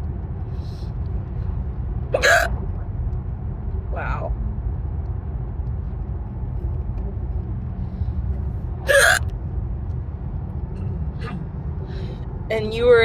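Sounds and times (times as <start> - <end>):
woman hiccuping: 2.2 - 2.5, 8.9 - 9.2, 11.2 - 11.4.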